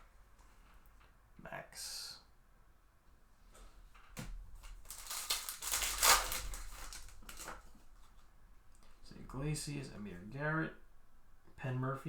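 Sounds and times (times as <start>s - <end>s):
cards being handled: 4.6s - 8.2s
foil wrapper crinkling and tearing: 4.6s - 8.2s.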